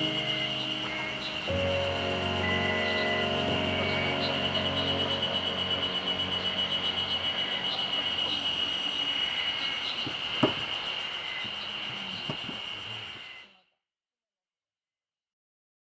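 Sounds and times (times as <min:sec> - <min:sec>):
insects buzzing: 0:00.0 - 0:11.7.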